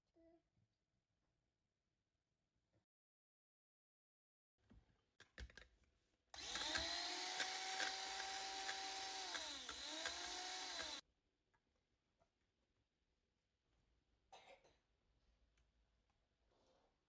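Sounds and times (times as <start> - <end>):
small electric motor whining: 6.4 - 11.0.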